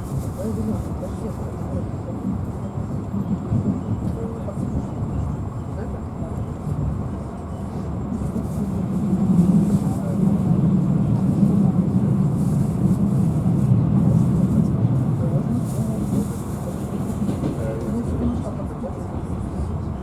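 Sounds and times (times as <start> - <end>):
train rumbling inside carriage: 0.0 - 20.0.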